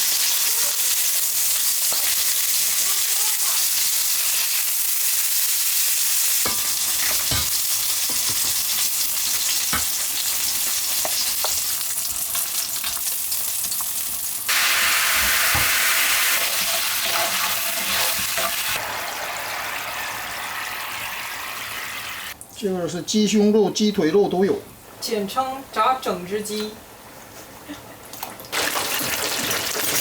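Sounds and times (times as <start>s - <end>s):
chicken sizzling in hot oil: 0.0s - 22.4s, 28.5s - 30.0s.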